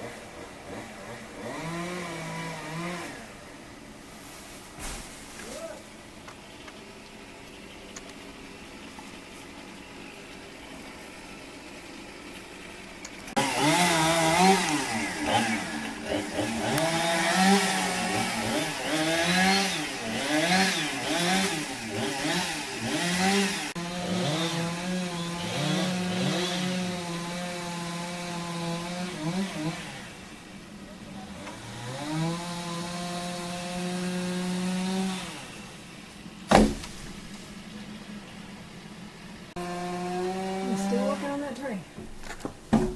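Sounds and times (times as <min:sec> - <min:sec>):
chainsaw engine revving: 0:00.0 - 0:03.4, 0:13.3 - 0:35.9, 0:39.5 - 0:41.8.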